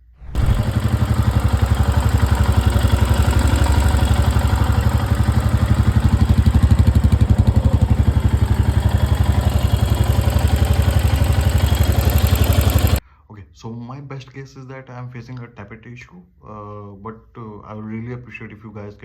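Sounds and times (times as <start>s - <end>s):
motorcycle engine idling: 0.4s - 13.0s.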